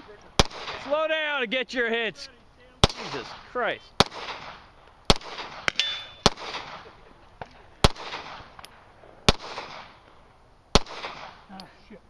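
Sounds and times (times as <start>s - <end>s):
rifle shots with echo: 0.0s - 1.0s, 2.8s - 7.0s, 7.8s - 10.0s, 10.7s - 11.5s
bullets clanking on steel targets: 5.7s - 6.3s.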